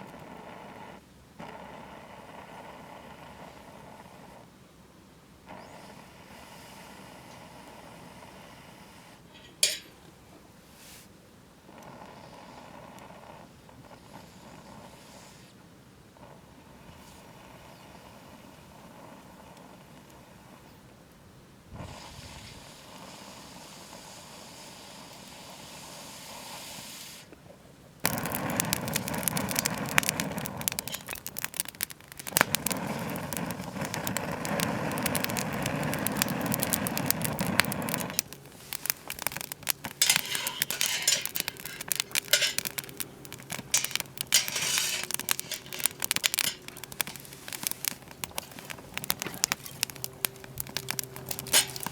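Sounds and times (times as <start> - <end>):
wood fire crackling and popping: 9.4 - 10.0, 28.0 - 51.9.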